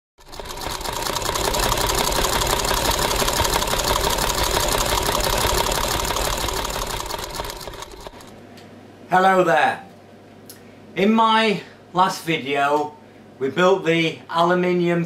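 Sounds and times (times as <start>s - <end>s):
sewing machine stitching: 0.2s - 8.4s.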